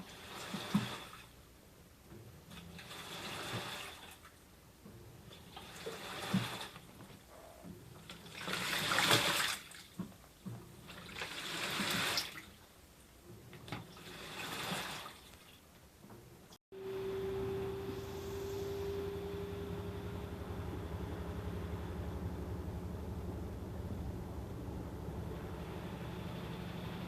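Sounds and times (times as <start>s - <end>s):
water sloshing in washing machine: 0.0s - 27.0s
steady hum with tone: 16.7s - 27.0s.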